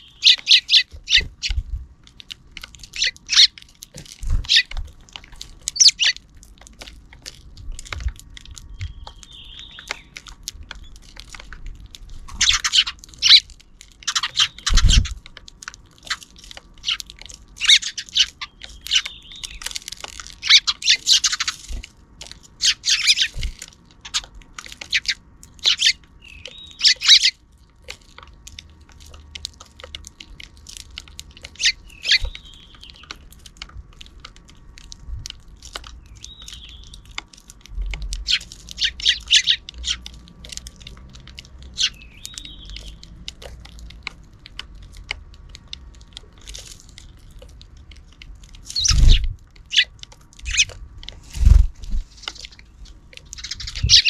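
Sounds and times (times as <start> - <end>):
sparrows chirping: 0.0 - 1.7, 2.8 - 6.2, 7.8 - 11.2, 12.2 - 15.3, 16.0 - 27.5, 31.2 - 33.6, 35.8 - 37.2, 38.1 - 43.4, 48.6 - 54.0.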